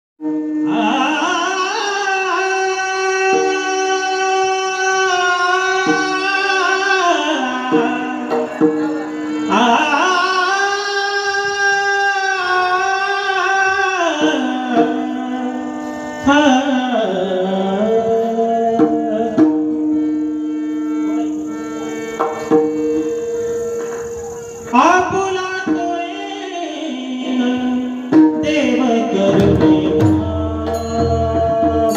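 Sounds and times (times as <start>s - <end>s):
men singing devotional song: 0.7s - 8.8s, 9.4s - 15.6s, 24.7s - 31.9s
hand drum strokes: 18.6s - 26.1s, 27.2s - 31.9s.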